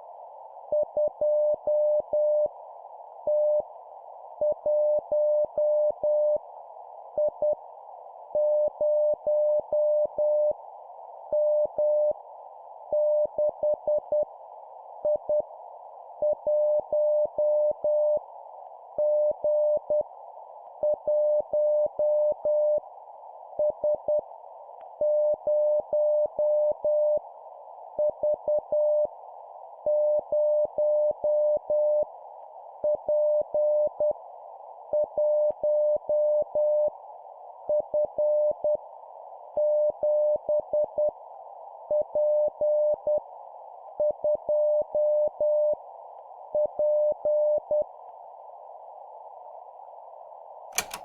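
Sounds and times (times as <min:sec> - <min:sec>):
morse code beeps: 0:50.8 - 0:51.0.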